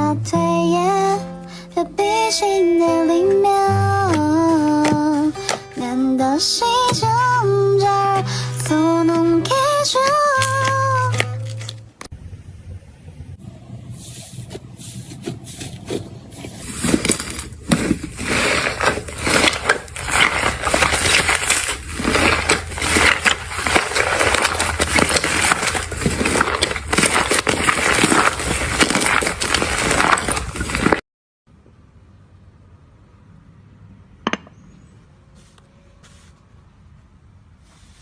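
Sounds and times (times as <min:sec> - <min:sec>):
crunchy slime crackling: 0:15.7 - 0:31.0.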